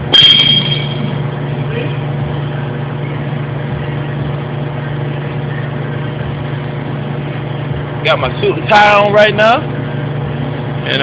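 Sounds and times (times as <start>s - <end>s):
metallic ring: 0.0s - 1.2s
machine hum: 0.0s - 11.0s.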